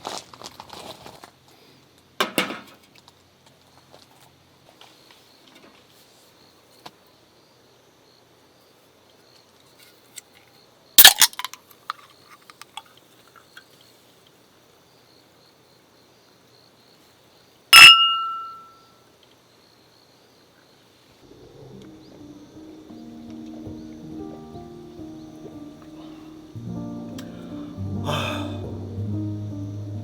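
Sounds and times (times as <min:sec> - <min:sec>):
hard objects clattering against glass: 0:17.8 - 0:18.6
ringing glass clink: 0:17.8 - 0:18.8.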